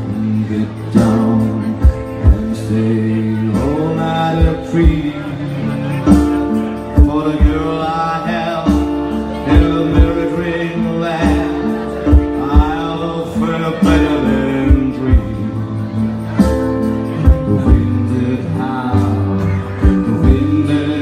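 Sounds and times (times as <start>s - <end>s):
acoustic guitar chords: 0.0s - 21.0s
bass line: 0.0s - 21.0s
man singing: 0.0s - 21.0s
low drum thumps: 6.1s - 7.9s, 11.2s - 15.7s, 16.3s - 18.2s.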